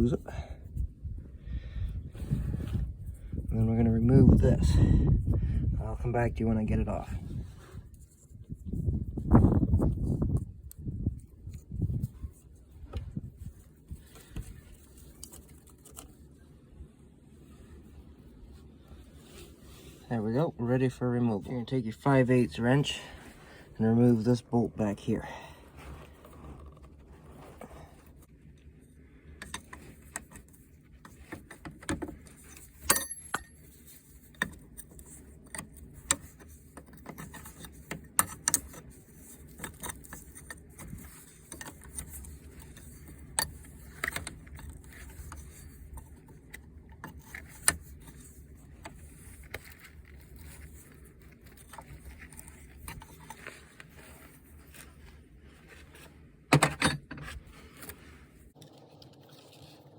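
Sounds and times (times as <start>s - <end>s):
wrench clinking on bolt: 32.8s - 33.6s.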